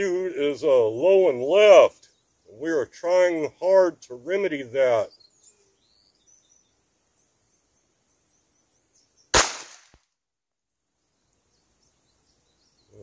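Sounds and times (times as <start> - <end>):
pistol shot: 9.3 - 10.0.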